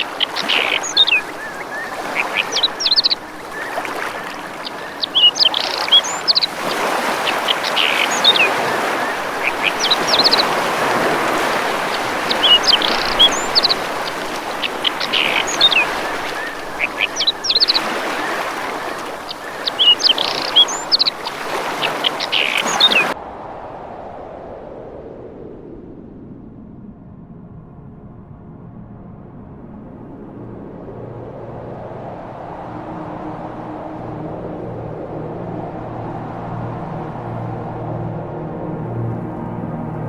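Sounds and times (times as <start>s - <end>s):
birds chirping: 0.0s - 23.2s
rushing water: 0.0s - 23.2s.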